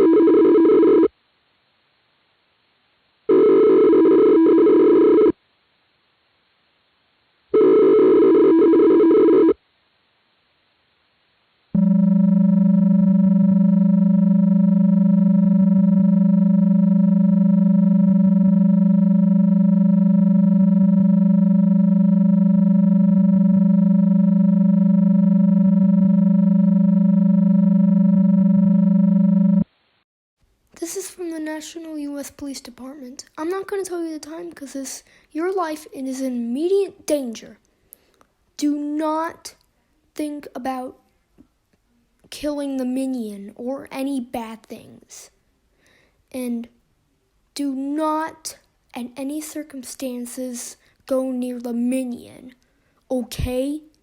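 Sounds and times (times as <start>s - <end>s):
loud steady buzzing alert tone: 11.8s - 29.7s.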